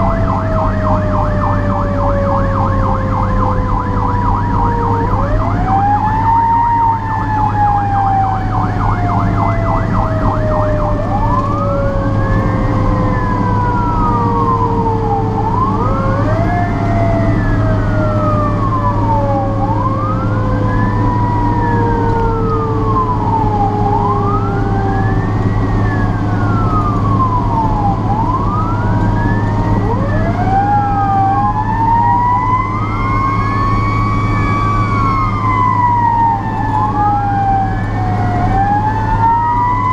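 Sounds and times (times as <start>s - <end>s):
fire truck engine drone: 0.0s - 39.9s
second siren wail: 0.0s - 39.9s
siren yelp and wail: 0.0s - 39.9s.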